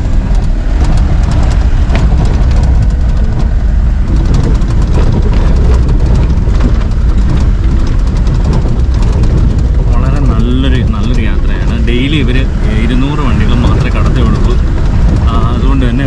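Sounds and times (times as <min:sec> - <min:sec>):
engine and road rumble: 0:00.0 - 0:16.0
vehicle body rattling and knocking: 0:00.0 - 0:16.0.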